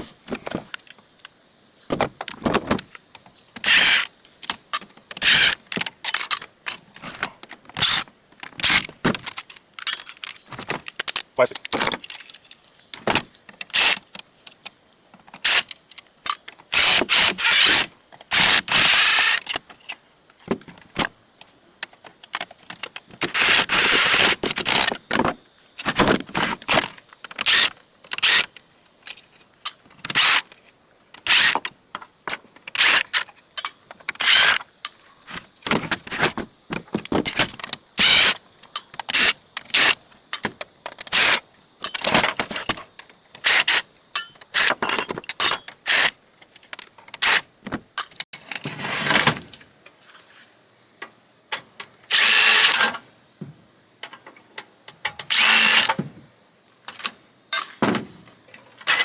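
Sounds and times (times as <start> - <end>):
metal parts clinking on metal: 43.4 - 47.4
rattling scrapes: 44.2 - 46.1.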